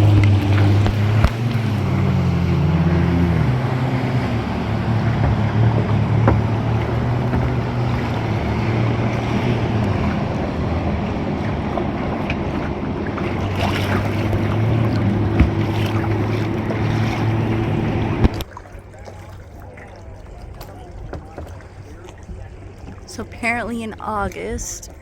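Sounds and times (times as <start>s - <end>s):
wind buffeting microphone: 0.0s - 18.5s
river water noise: 0.0s - 25.0s.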